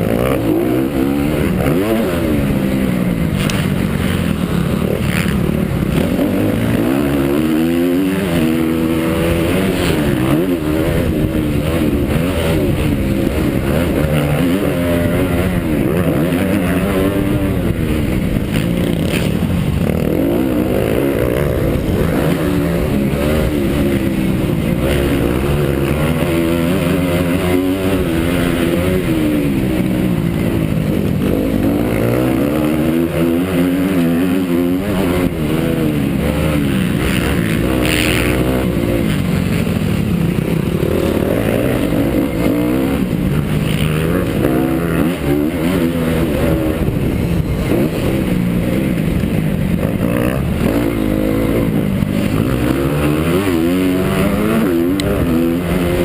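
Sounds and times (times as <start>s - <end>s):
motocross bike engine revving: 0.0s - 56.0s.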